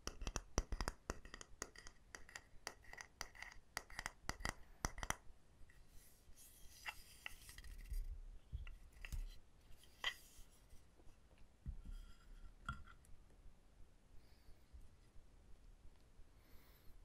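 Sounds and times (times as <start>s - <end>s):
taps on small wooden objects: 0.0s - 5.2s.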